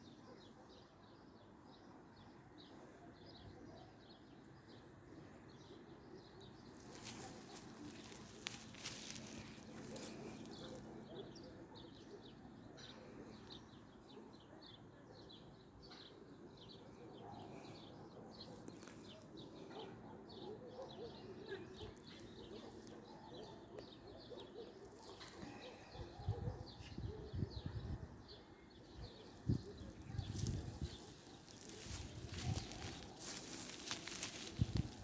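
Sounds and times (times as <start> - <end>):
low outdoor background: 0.0 - 35.0.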